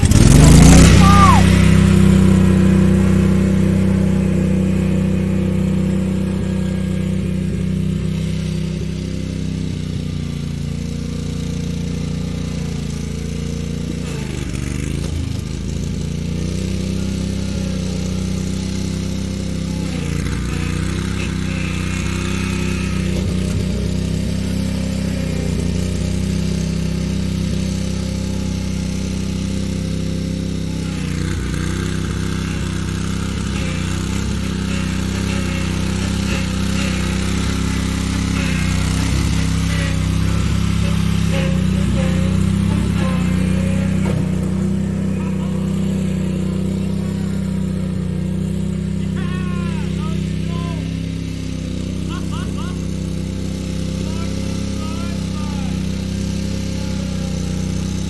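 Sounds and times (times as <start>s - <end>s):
riding lawn mower engine running: 0.0s - 58.0s.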